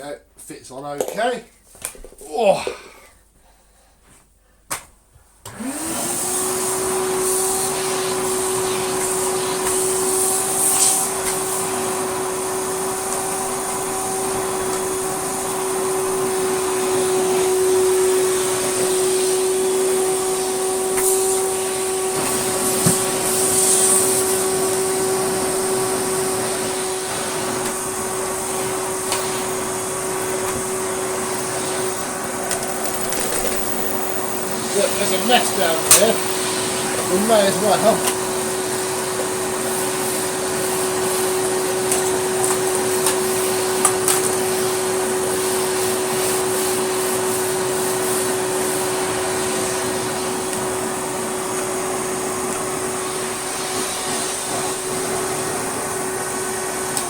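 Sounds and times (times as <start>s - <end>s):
vacuum cleaner motor running: 5.4s - 57.0s.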